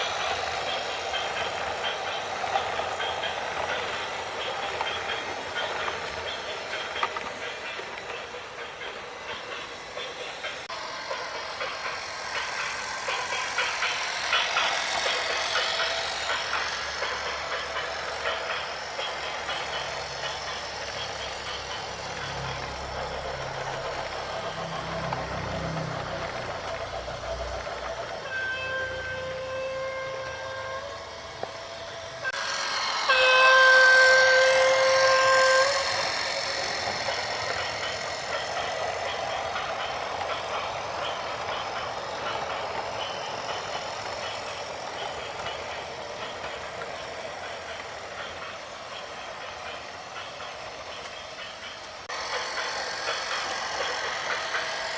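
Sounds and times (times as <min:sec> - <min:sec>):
heavy vehicle running: 0:00.0 - 0:29.2
vehicle horn blasts: 0:28.3 - 0:30.9.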